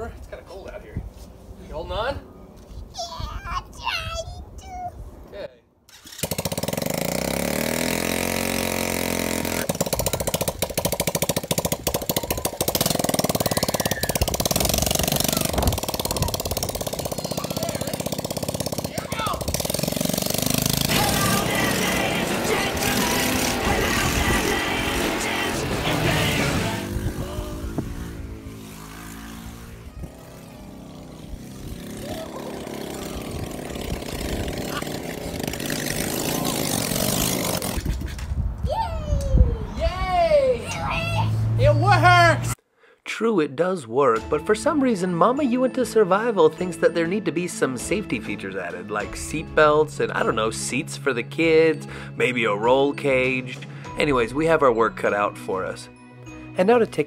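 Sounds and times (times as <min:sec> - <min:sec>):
small engine revving and running: 0:05.9 - 0:38.0.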